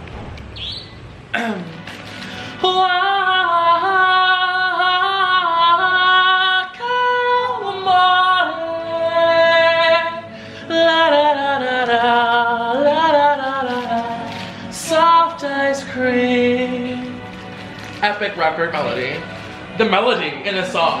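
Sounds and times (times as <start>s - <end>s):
woman singing: 2.6s - 17.3s.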